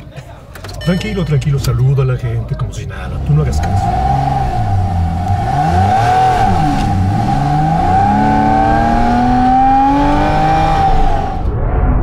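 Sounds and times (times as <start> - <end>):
car engine revving: 3.0 - 11.5.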